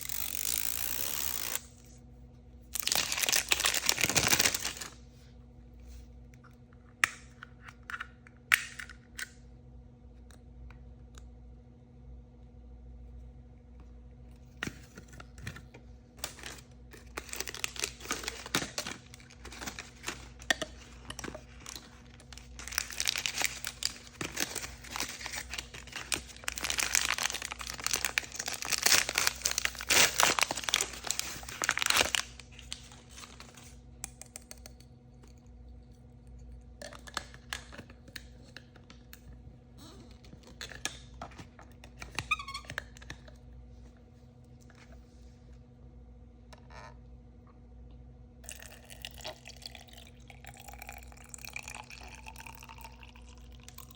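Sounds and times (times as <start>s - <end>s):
plastic packaging crinkling and tearing: 2.7s - 5.0s, 16.2s - 33.8s.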